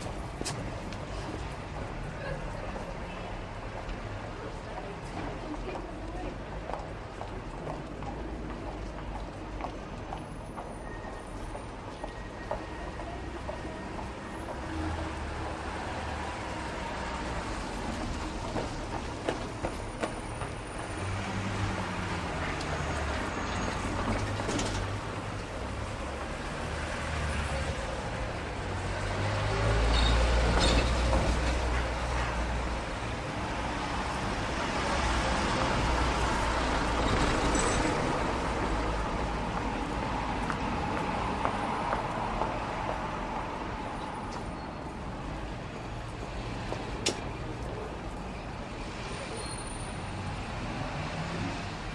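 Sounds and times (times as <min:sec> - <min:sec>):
footsteps on pavement: 0:00.0 - 0:02.0, 0:03.7 - 0:14.7, 0:17.6 - 0:23.3, 0:39.1 - 0:44.5, 0:46.1 - 0:47.6
passing vehicles: 0:00.0 - 0:51.9.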